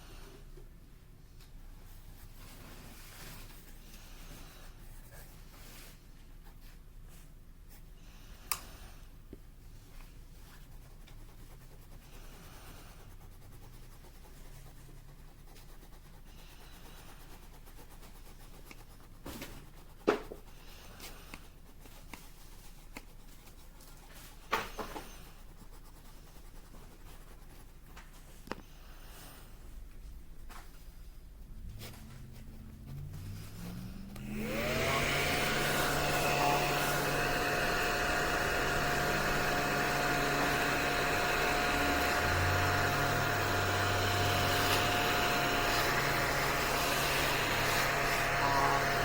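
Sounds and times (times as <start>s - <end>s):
small vacuum motor starting: 32.9s - 49.0s.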